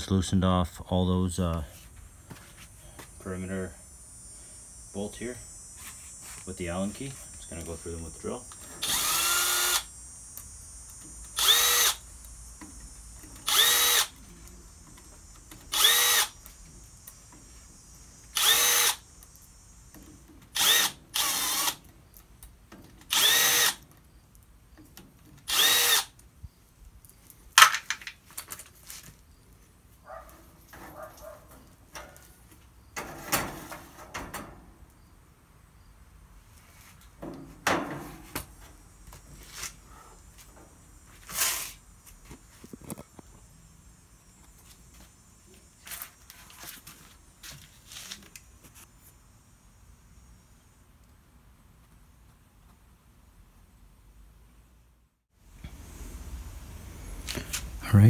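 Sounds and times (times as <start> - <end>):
power drill whining: 8.5 - 9.9, 11.2 - 12.0, 13.2 - 14.2, 15.6 - 16.4, 18.3 - 19.0, 20.5 - 21.8, 23.1 - 23.8, 25.5 - 26.2.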